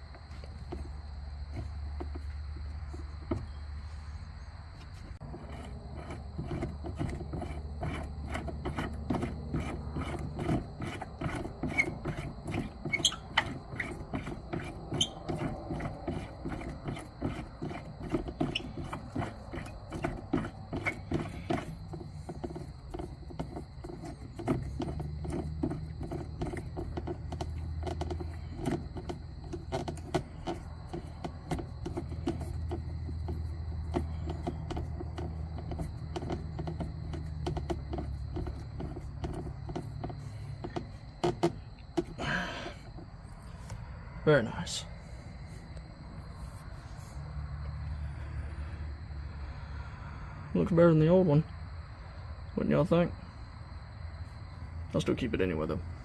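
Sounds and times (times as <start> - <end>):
parts clicking and scraping: 0.0 - 43.9.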